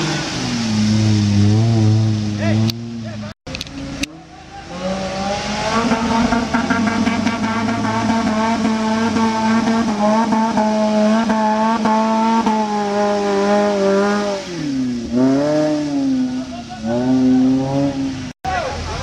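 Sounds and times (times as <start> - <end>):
engine at high revs: 4.0 - 18.4.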